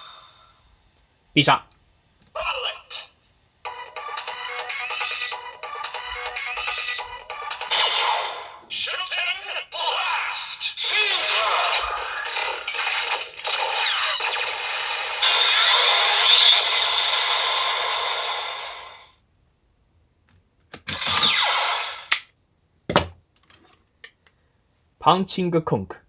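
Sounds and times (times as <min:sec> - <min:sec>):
toy electronic sound effects: 0:10.6 - 0:17.9
plastic toy clicks: 0:20.8 - 0:21.4.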